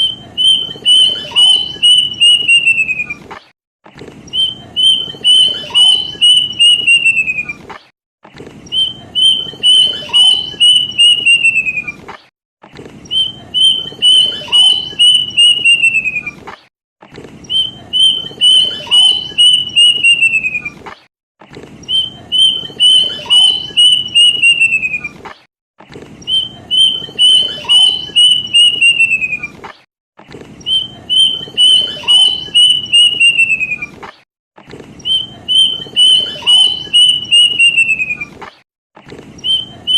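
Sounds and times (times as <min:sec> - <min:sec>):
cuckoo whistled song: 0:00.0 - 0:03.3, 0:04.3 - 0:07.6, 0:08.7 - 0:12.0, 0:13.1 - 0:16.4, 0:17.5 - 0:20.8, 0:21.8 - 0:25.2, 0:26.3 - 0:29.6, 0:30.6 - 0:34.0, 0:35.0 - 0:38.4, 0:39.4 - 0:39.9.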